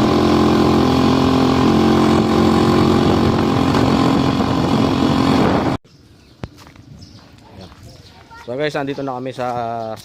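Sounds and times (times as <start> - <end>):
motorcycle engine running: 0.0 - 5.8.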